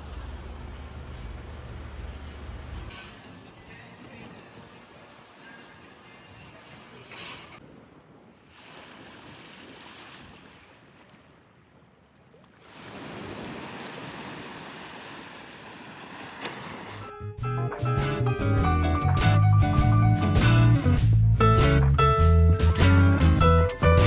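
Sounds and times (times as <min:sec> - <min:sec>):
sea waves washing ashore: 0:00.0 - 0:17.1.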